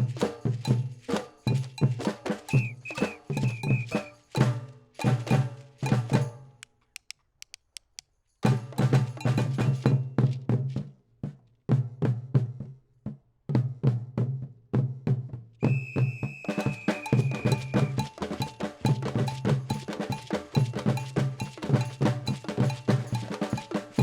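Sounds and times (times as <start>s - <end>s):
percussion group playing drums: 0.0s - 6.5s, 8.4s - 10.9s, 13.6s - 24.0s
woodblock-like clicks: 2.5s - 4.2s, 5.9s - 8.1s, 16.6s - 24.0s.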